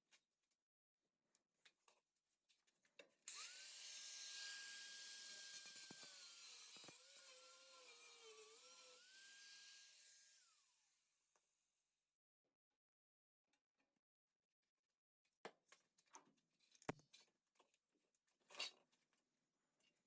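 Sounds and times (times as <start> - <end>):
high-speed power tool whining: 3.3 - 11.0.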